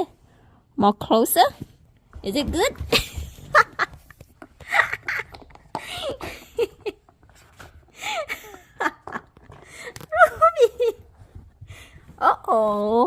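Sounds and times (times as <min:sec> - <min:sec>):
rustling and scrabbling: 0:08.6 - 0:13.0.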